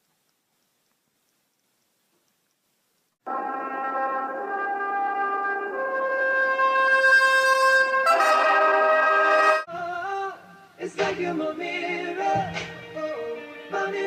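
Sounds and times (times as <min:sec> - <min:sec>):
brass chords: 0:03.2 - 0:09.8.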